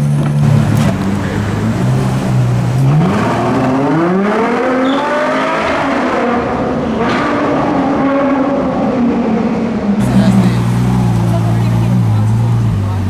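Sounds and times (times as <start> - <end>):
sharp exhaust crack: 0.0 - 5.1, 10.0 - 13.0
sports car engine accelerating: 0.0 - 13.0.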